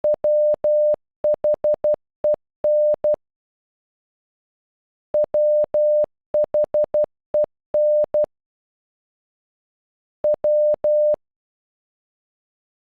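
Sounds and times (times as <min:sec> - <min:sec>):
morse code beeps: 0:00.0 - 0:02.0, 0:02.7 - 0:03.2, 0:05.2 - 0:08.3, 0:10.2 - 0:11.2.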